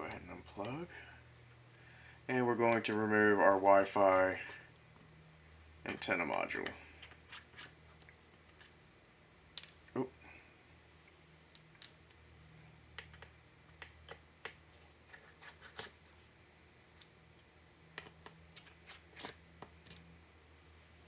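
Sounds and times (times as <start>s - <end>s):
low steady hum: 0.0s - 21.0s
small clicks and taps of tools: 12.9s - 14.7s, 17.0s - 18.7s.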